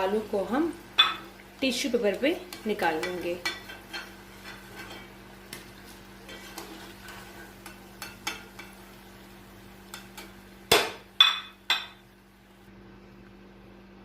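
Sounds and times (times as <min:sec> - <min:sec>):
metal spoon scraping a pan: 0:02.1 - 0:08.9.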